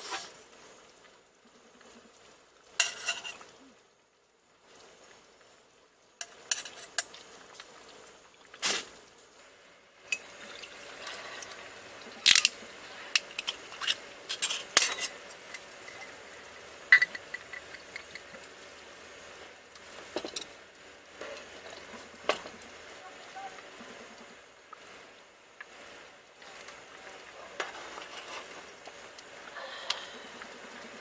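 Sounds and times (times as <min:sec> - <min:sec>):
faint cooking hiss: 0:00.0 - 0:31.0
metal utensils clinking on pots: 0:02.8 - 0:03.5, 0:06.2 - 0:07.2, 0:10.0 - 0:18.5, 0:19.8 - 0:20.6.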